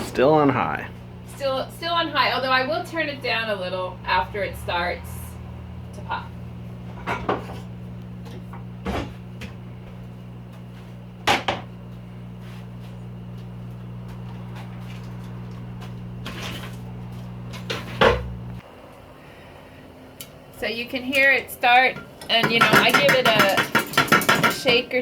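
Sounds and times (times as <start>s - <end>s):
steady appliance hum: 0.0s - 25.0s
popcorn kernels popping: 22.2s - 24.8s.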